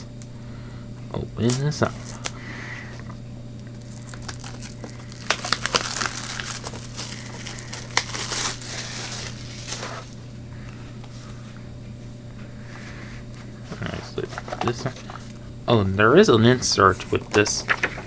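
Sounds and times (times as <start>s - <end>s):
plastic and cardboard crinkling: 3.7s - 10.2s, 13.7s - 15.4s.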